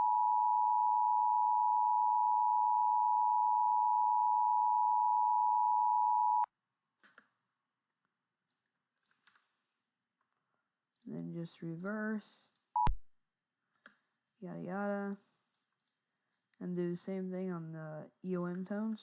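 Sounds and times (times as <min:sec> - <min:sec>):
faint clicks: 0:15.4 - 0:16.6.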